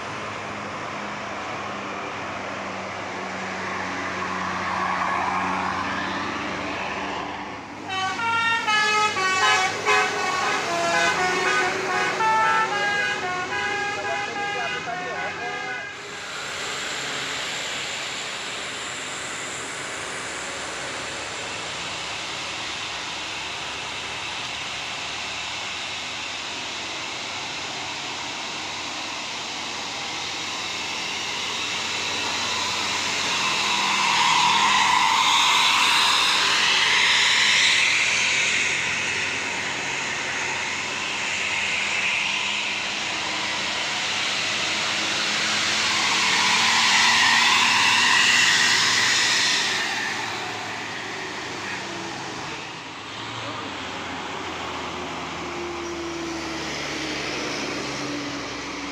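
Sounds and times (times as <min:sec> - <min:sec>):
bus engine climbing hill: 0:00.0 - 0:58.9.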